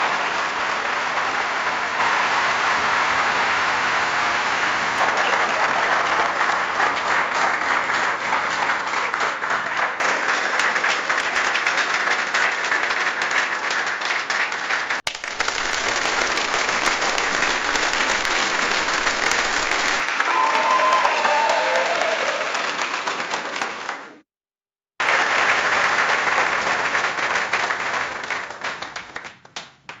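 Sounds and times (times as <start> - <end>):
crowd applause: 0.0 - 24.2, 25.0 - 29.7.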